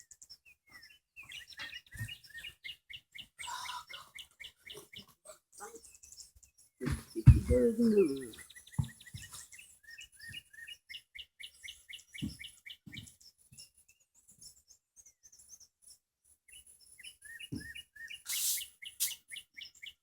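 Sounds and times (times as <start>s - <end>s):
small songbird chirping: 0.0s - 20.0s
faint low knocks: 6.8s - 8.3s.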